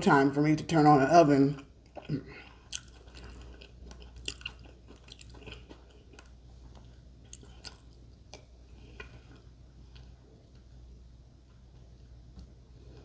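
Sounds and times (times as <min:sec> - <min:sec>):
person chewing sandwich: 0:01.6 - 0:13.0.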